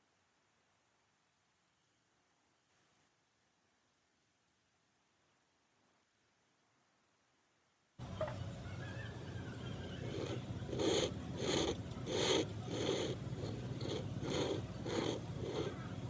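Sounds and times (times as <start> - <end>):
hand tool strokes on wood: 9.6 - 16.0.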